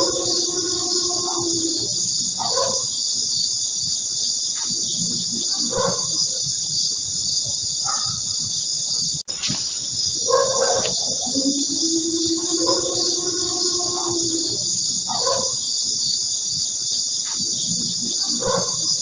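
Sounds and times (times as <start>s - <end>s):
wavering animal calls: 0.0s - 2.5s, 10.2s - 15.4s
night insects chirping: 0.0s - 19.0s.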